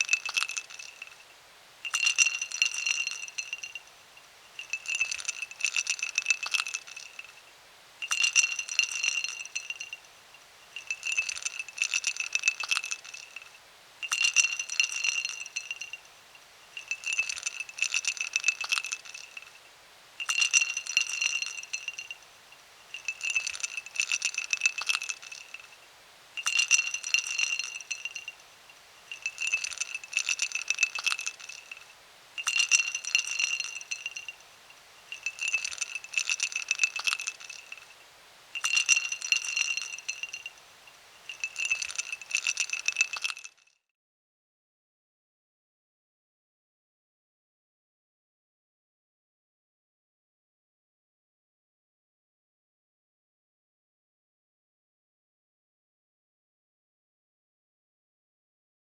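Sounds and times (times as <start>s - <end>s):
ice cubes clinking in a glass: 0.0s - 43.6s.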